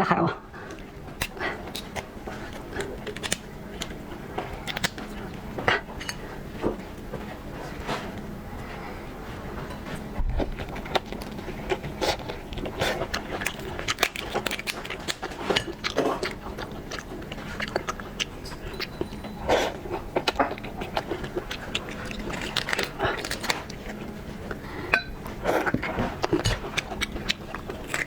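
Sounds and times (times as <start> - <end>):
wet mouth clicks and crunches: 0.7 - 5.2, 10.4 - 19.0, 19.7 - 24.6, 25.5 - 28.0
person chewing shrimp: 0.7 - 6.2, 10.0 - 28.0.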